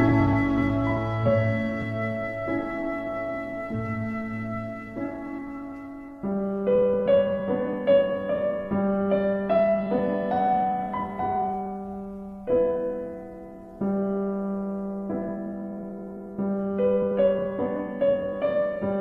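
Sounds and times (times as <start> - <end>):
soft slow piano music: 0.0 - 19.0.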